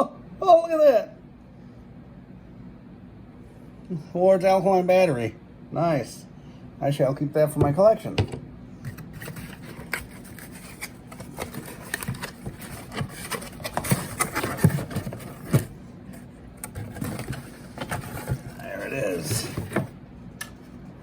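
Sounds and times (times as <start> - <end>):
hands handling box packaging: 8.9 - 20.8.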